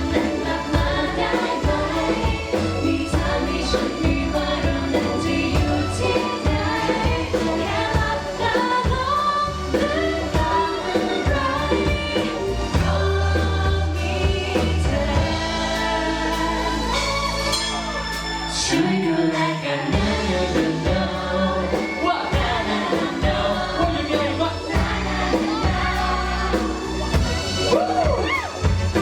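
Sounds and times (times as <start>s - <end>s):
bass line: 0.0s - 29.0s
drums: 0.0s - 29.0s
person singing: 18.5s - 29.0s.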